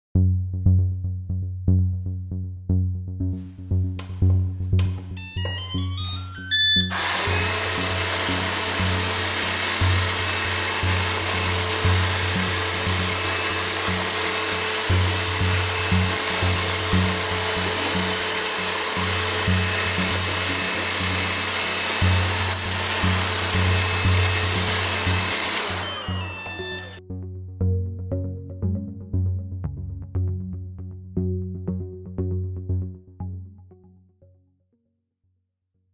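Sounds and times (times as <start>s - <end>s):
background music with beat: 0.2s - 34.0s
robot vacuum cleaner whirring: 5.5s - 27.0s.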